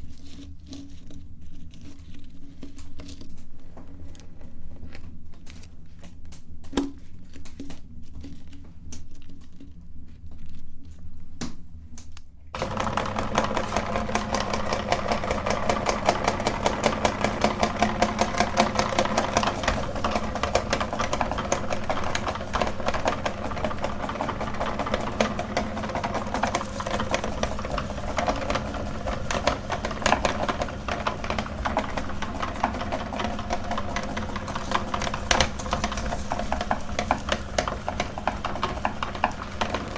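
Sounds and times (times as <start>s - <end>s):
meat grinder motor grinding: 12.6s - 39.9s.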